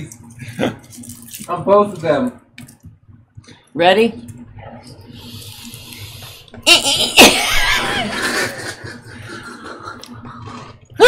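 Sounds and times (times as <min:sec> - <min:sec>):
people laughing loudly: 0:06.7 - 0:10.1.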